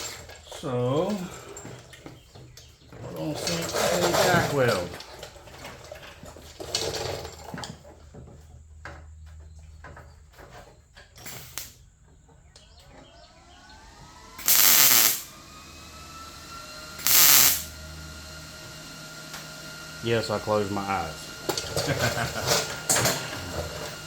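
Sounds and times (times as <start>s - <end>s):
welding crackle: 14.4s - 15.3s, 17.0s - 17.7s.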